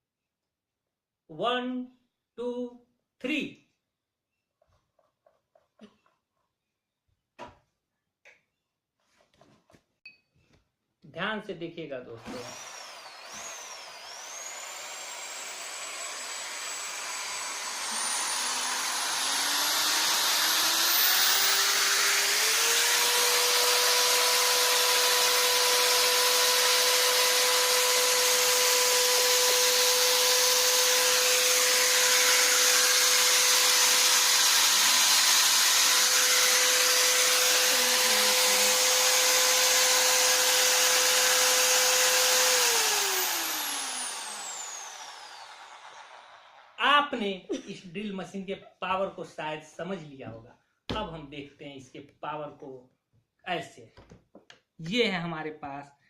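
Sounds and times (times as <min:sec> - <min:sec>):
electric drill motor whine: 0:12.2 - 0:46.8.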